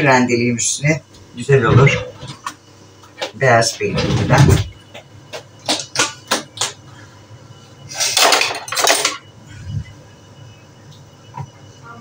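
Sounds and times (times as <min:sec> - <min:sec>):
utensils clinking on dishes: 0:08.0 - 0:09.2.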